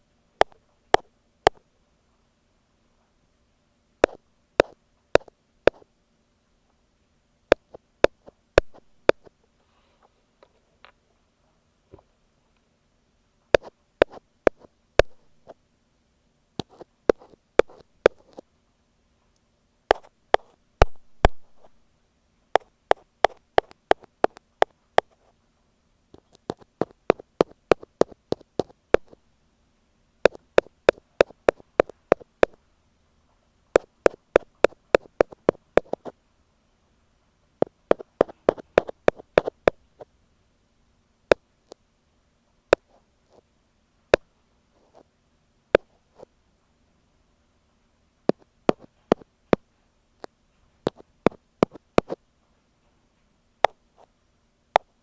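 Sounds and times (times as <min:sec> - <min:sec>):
faint steady hum: 0:00.0 - 0:55.0
ear pick tapping on microphone: 0:00.4 - 0:01.6, 0:04.0 - 0:05.8, 0:07.5 - 0:09.3, 0:13.5 - 0:15.6, 0:16.6 - 0:18.4, 0:19.9 - 0:21.8, 0:22.6 - 0:25.2, 0:26.2 - 0:29.2, 0:30.2 - 0:32.6, 0:33.8 - 0:36.1, 0:37.6 - 0:39.8, 0:48.3 - 0:49.6, 0:50.9 - 0:52.2, 0:54.8 - 0:55.0.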